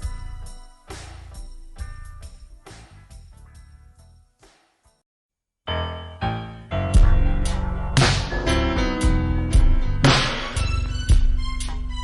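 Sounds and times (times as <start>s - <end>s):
hip-hop beat with synth and bass: 0.0s - 3.5s, 6.8s - 12.0s
sharp drum hits: 7.0s - 10.6s.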